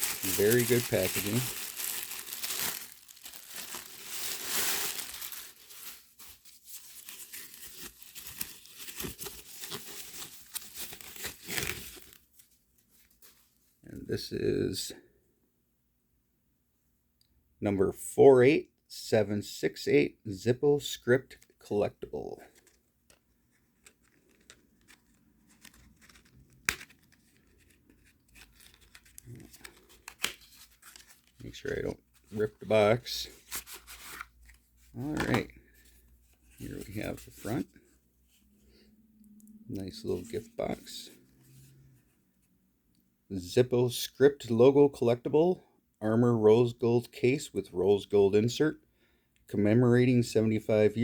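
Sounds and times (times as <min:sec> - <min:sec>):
cardboard packaging rustling and tearing: 0:00.0 - 0:12.4, 0:23.8 - 0:35.4
wrapping crinkling: 0:00.0 - 0:12.5, 0:23.6 - 0:35.4.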